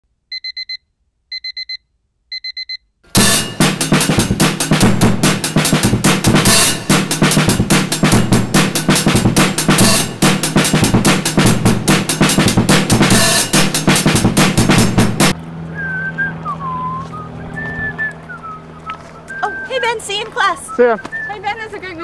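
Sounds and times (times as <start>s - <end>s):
fast drum-driven music: 3.1s - 15.4s.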